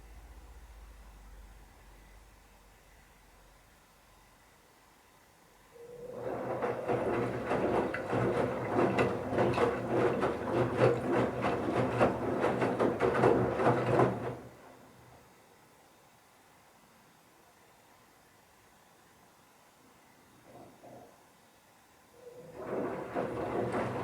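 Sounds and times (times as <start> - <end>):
washing machine motor humming: 5.9 - 14.9, 22.2 - 24.0.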